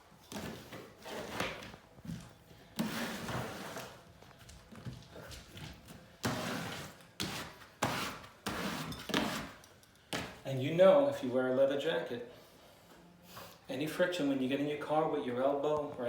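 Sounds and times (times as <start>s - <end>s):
hands scuffing wallpaper: 0.3s - 10.4s.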